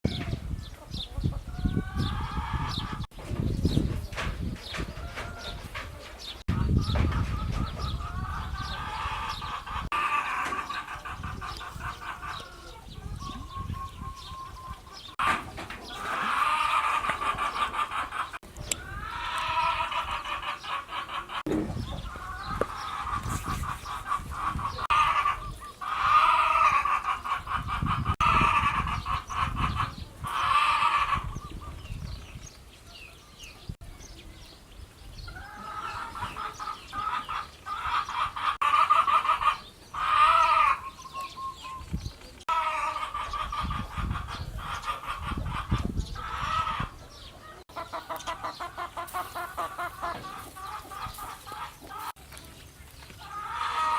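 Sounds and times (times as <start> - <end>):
farm animal pulsed cries: 15.9 - 31.7, 35.3 - 41.9, 53.2 - 53.9.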